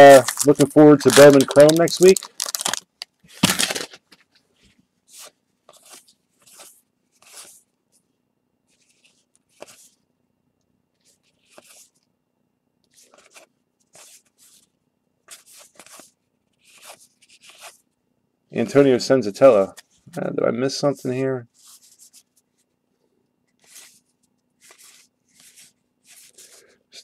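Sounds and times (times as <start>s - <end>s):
trading cards swishing: 24.6s - 26.5s.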